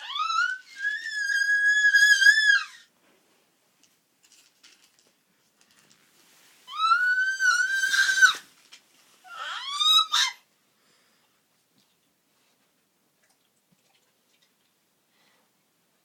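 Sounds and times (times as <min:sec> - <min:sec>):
baby making high-pitched cries: 0:09.3 - 0:10.4.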